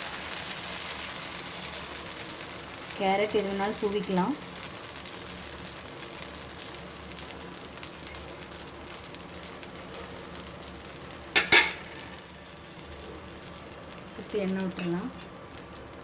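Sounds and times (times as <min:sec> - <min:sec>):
batter sizzling on a hot pan: 0:00.0 - 0:16.0.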